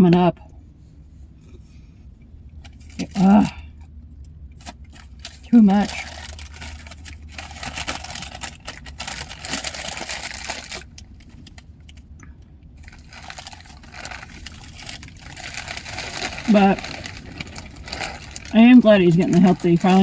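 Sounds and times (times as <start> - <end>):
crunchy chewing of crackers: 4.6 - 12.2, 12.8 - 20.0.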